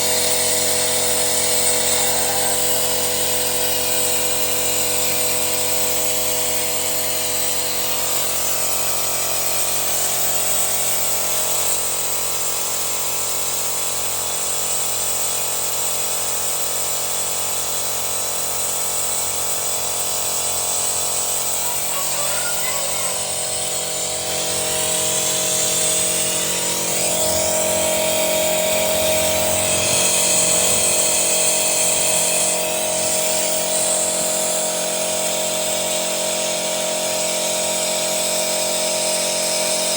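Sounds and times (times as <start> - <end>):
car engine whining and humming: 23.2 - 33.7.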